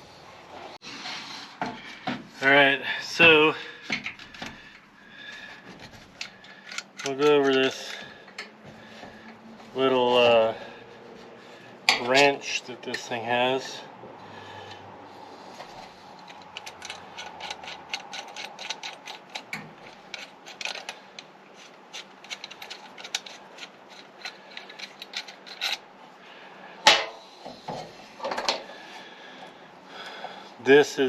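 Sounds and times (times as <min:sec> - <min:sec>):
metal hand tools clicking and rattling: 0:06.1 - 0:08.5, 0:16.2 - 0:25.8.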